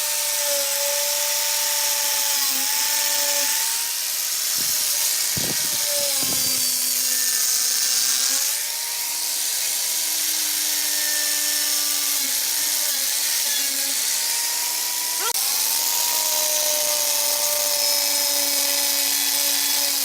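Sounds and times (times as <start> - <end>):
electric power tool running: 0.0 - 20.0.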